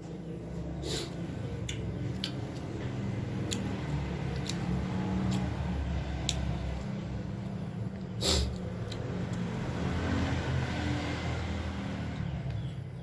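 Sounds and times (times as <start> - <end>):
person chewing food: 0.6 - 9.8.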